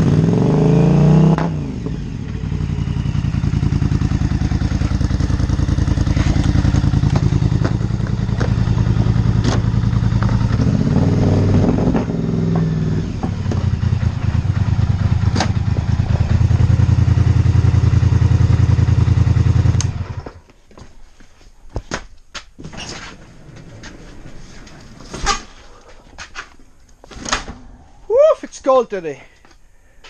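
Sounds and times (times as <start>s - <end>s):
atv engine idling and revving: 0.0s - 20.4s.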